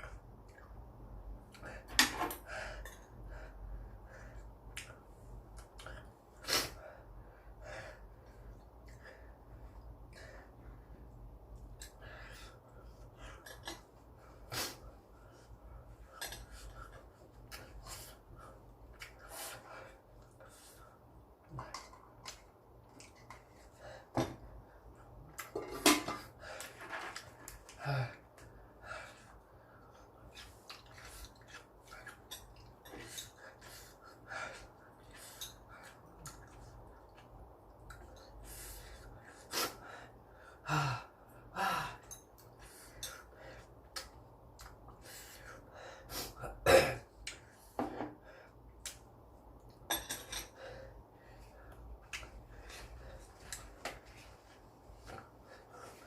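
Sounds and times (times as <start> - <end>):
person sniffing: 6.4 - 6.8, 14.4 - 14.9, 46.0 - 46.5.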